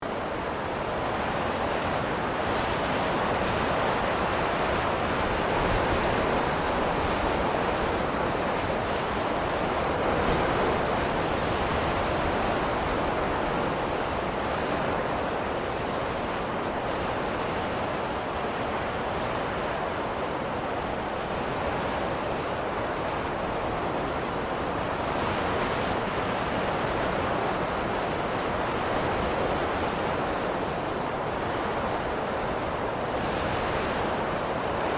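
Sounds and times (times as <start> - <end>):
steady rushing wind: 0.0 - 34.9.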